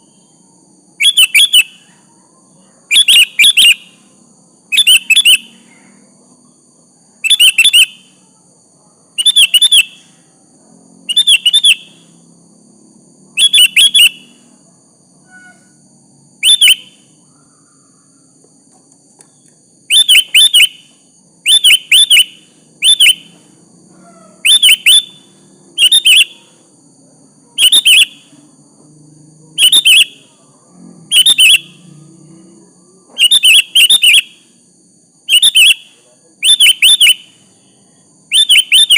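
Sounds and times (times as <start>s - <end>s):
bulbul chirping: 1.0s - 1.9s, 2.9s - 4.1s, 4.7s - 5.7s, 7.2s - 8.2s, 9.2s - 10.1s, 11.1s - 12.1s, 13.4s - 14.4s, 16.4s - 17.6s, 19.2s - 23.5s, 24.2s - 26.6s, 27.6s - 28.3s, 29.6s - 30.3s, 31.1s - 31.9s, 33.2s - 34.5s, 35.3s - 37.4s, 38.3s - 38.9s.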